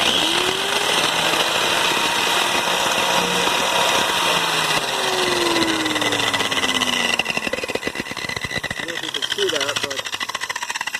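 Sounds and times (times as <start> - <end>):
angle grinder whirring: 0.0 - 10.9
low tone falling in pitch: 4.8 - 7.8.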